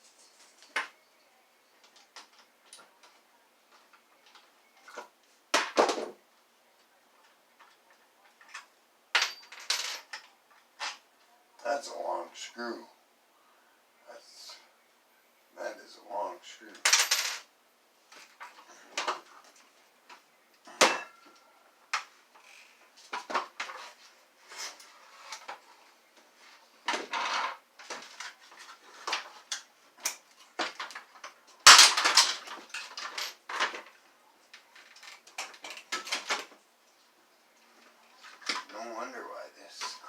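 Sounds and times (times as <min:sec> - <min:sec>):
plastic and metal parts clattering: 0:26.8 - 0:36.6.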